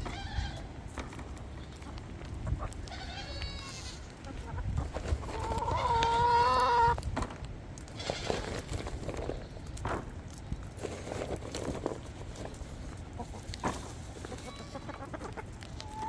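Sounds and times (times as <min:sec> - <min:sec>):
chickens clucking: 0:00.0 - 0:07.0, 0:11.2 - 0:16.0.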